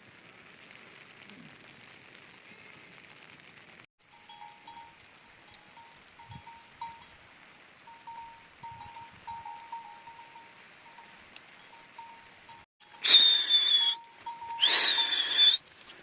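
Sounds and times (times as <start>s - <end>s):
steady rain hiss: 0.0s - 16.0s
sheep bells clinking: 4.1s - 7.2s, 7.8s - 15.5s.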